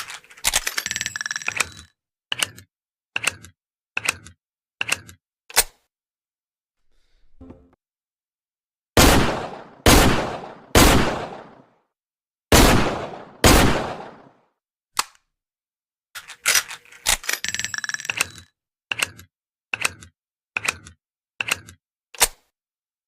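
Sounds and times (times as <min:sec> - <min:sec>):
rattle of metallic clicks: 0:00.0 - 0:02.6, 0:16.2 - 0:19.2.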